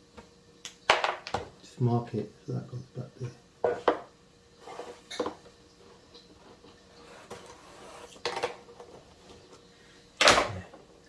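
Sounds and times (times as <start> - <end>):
hard objects clattering on worktop: 0.9 - 1.5, 3.6 - 5.4, 7.0 - 9.1.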